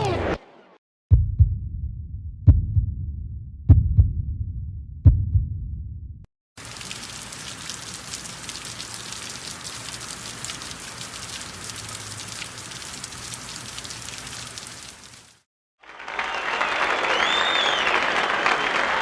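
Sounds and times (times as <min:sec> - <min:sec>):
steady rain falling: 0:06.6 - 0:15.4.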